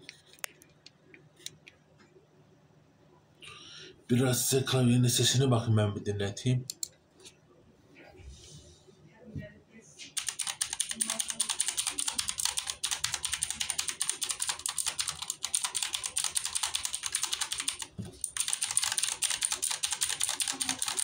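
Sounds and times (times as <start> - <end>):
rapid clicking keystrokes: 10.2 - 21.0.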